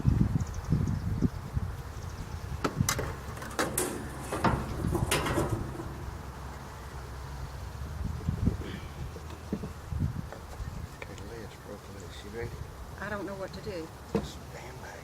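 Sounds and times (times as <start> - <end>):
wooden hive parts scraping: 2.6 - 6.7.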